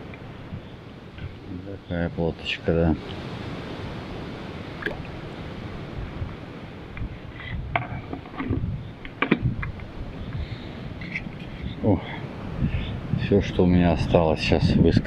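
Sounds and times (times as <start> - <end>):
wind on microphone: 0.0 - 15.0
water splashing and dripping: 4.5 - 5.3.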